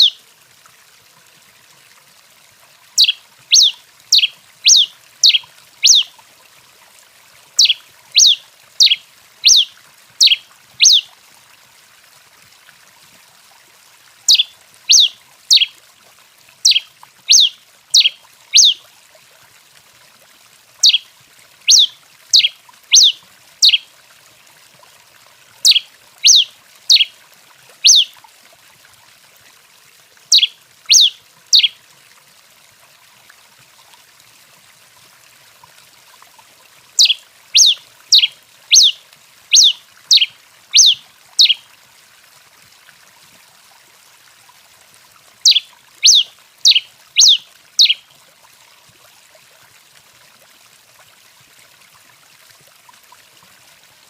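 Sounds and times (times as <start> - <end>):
faint steady hiss: 0.0 - 54.0
finch calling: 3.0 - 6.1, 7.6 - 11.0, 14.3 - 15.7, 16.6 - 18.8, 20.8 - 21.0, 21.7 - 23.8, 25.6 - 27.1, 27.8 - 28.1, 30.3 - 31.8, 37.0 - 41.6, 45.4 - 48.0.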